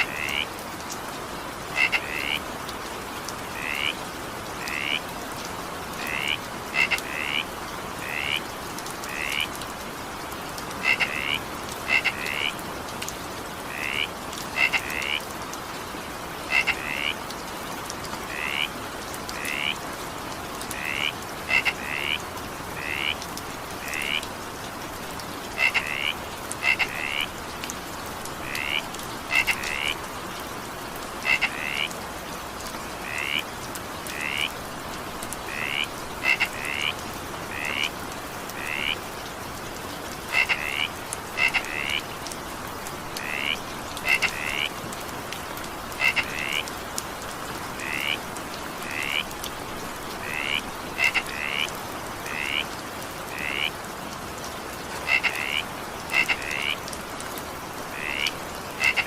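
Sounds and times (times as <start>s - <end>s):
frog croaking: 0.0s - 0.5s, 1.8s - 2.4s, 3.6s - 4.0s, 4.6s - 5.0s, 6.0s - 9.5s, 10.8s - 12.6s, 13.7s - 15.2s, 16.5s - 17.2s, 18.3s - 18.7s, 19.4s - 19.8s, 20.7s - 22.2s, 22.8s - 23.2s, 23.8s - 24.3s, 25.6s - 27.3s, 28.4s - 30.0s, 31.2s - 31.9s, 33.0s - 33.4s, 34.1s - 34.5s, 35.4s - 39.0s, 40.3s - 42.0s, 43.2s - 44.8s, 46.0s - 46.7s, 47.8s - 48.2s, 48.8s - 49.3s, 50.2s - 52.7s, 53.3s - 53.8s, 55.0s - 56.8s, 57.9s - 59.0s
steady rain: 0.0s - 59.0s.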